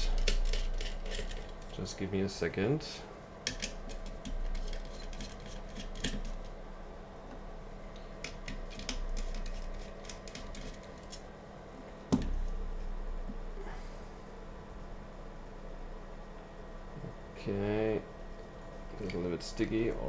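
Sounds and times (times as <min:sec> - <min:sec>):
metal clicks taps and scrapes: 0:00.0 - 0:01.7, 0:03.4 - 0:06.6, 0:07.9 - 0:11.3
steady low hum: 0:00.0 - 0:20.0.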